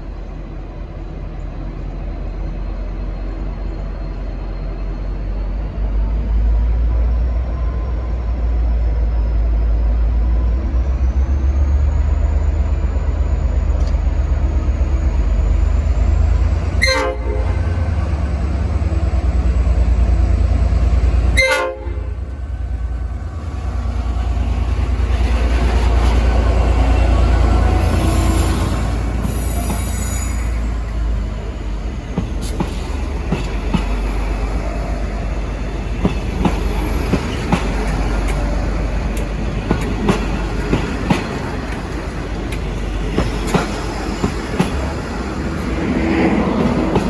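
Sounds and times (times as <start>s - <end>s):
locomotive engine rumble: 0.0s - 47.0s
train horn blasts: 16.8s - 17.8s, 21.3s - 22.3s.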